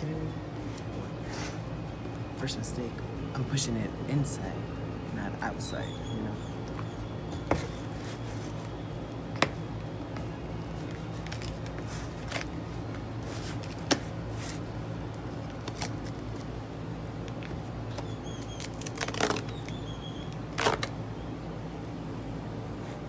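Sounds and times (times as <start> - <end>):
air conditioner hum: 0.0 - 23.0
box packaging clicks and rustles: 10.7 - 16.6.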